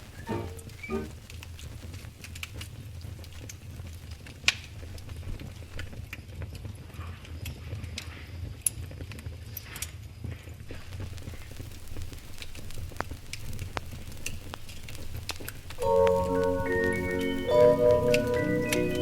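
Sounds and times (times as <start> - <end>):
wood fire crackling: 0.0 - 6.6, 10.5 - 19.0.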